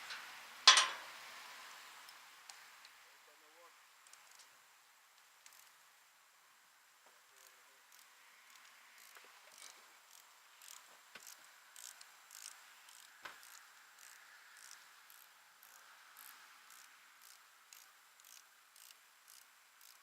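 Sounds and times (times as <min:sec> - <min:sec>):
faint insect chirping: 0:07.4 - 0:20.0.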